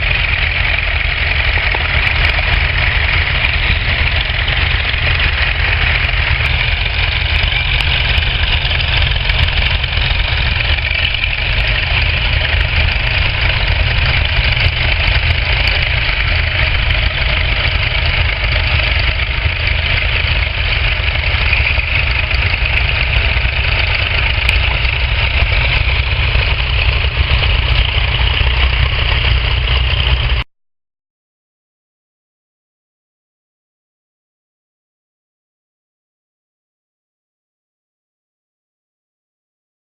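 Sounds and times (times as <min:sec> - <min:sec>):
tractor engines rumbling: 0:00.0 - 0:30.5.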